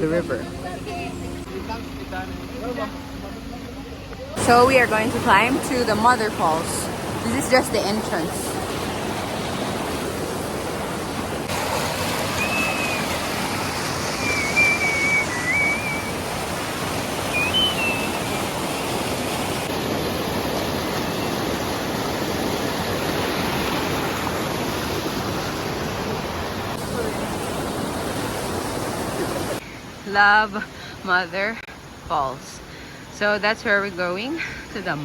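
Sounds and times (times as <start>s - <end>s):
river flowing over rocks: 4.4s - 30.0s
short high chirps: 14.2s - 16.1s, 17.3s - 18.9s.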